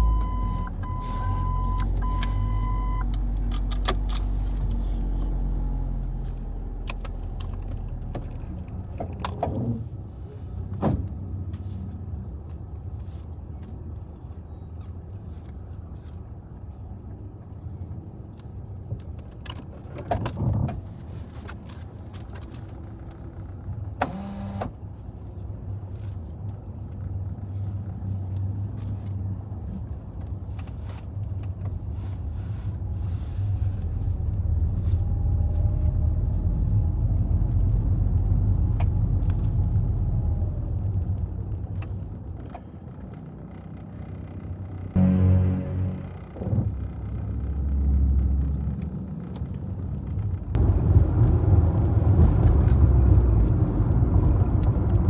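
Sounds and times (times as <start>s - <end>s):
car cabin low hum: 0.0s - 8.4s, 24.0s - 24.8s.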